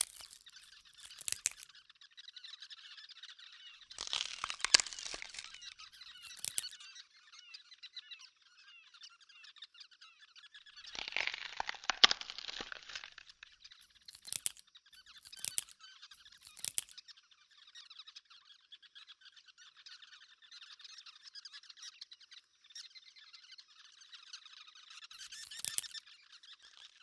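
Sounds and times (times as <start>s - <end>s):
rustling and crackling: 0.0s - 1.6s, 4.0s - 6.8s, 13.8s - 16.9s, 25.2s - 26.0s.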